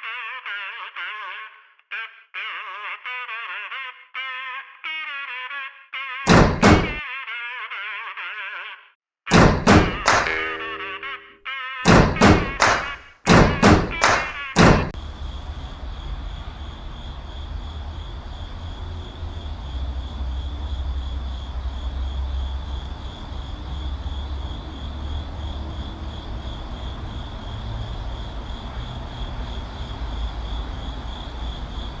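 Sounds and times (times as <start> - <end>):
high pulsing tone: 10.0 - 11.4
constant hiss: 15.0 - 32.0.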